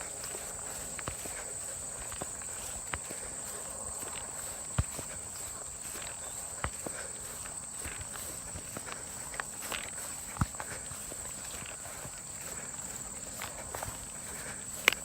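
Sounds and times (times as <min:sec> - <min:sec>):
footsteps in wet grass: 0:00.0 - 0:15.0.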